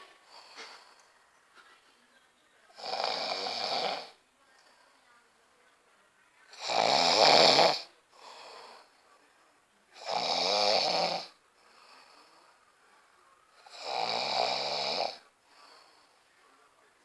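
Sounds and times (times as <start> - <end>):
soft breaths: 0.0 - 6.6, 7.8 - 10.0, 11.2 - 13.9, 14.5 - 17.0
person snoring loudly: 6.6 - 7.9, 13.7 - 15.2.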